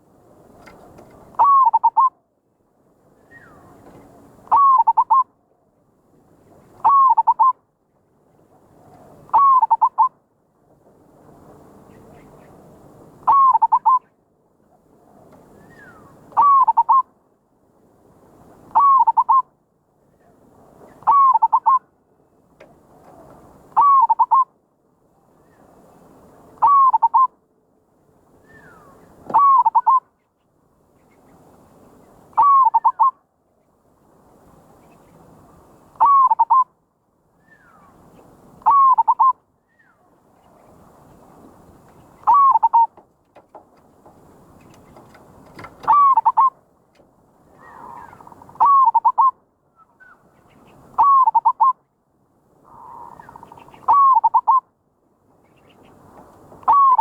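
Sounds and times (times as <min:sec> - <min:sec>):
dove cooing: 0:00.6 - 0:02.1, 0:03.3 - 0:05.3, 0:06.8 - 0:07.5, 0:08.8 - 0:10.1, 0:13.3 - 0:14.0, 0:15.0 - 0:17.0, 0:18.7 - 0:19.5, 0:21.0 - 0:21.8, 0:22.9 - 0:24.5, 0:26.6 - 0:27.3, 0:28.5 - 0:30.0, 0:32.4 - 0:33.2, 0:36.0 - 0:36.6, 0:38.6 - 0:39.4, 0:42.2 - 0:43.5, 0:44.7 - 0:46.6, 0:47.6 - 0:49.4, 0:51.0 - 0:51.8, 0:52.7 - 0:54.6, 0:56.7 - 0:57.0.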